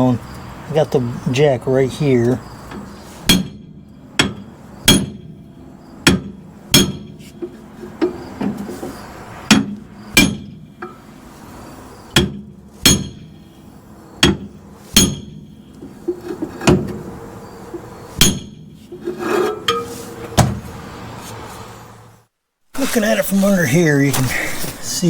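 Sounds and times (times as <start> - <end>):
hammer striking steel: 3.3 - 5.4, 6.0 - 7.2, 9.5 - 11.0, 12.2 - 13.4, 14.2 - 15.5, 18.2 - 18.7.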